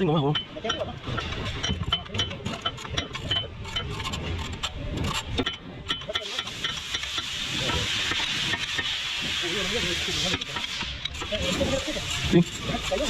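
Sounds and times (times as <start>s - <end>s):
steady hiss: 6.2s - 13.0s.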